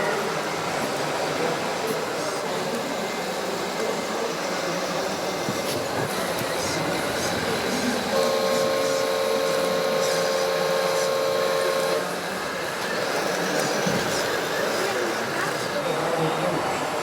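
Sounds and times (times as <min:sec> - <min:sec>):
whirr of small motors: 0:00.0 - 0:17.0
model truck horn chord: 0:08.1 - 0:12.2.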